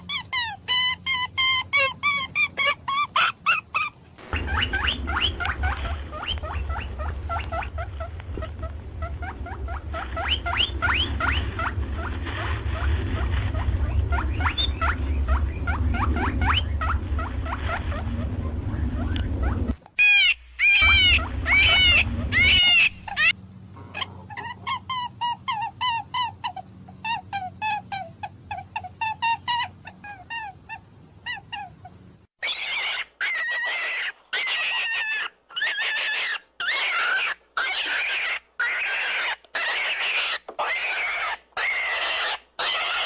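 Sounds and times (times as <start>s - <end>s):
small animals squeaking: 0.0s - 43.0s
loud high calls: 2.5s - 24.8s
low rumble: 4.1s - 25.8s.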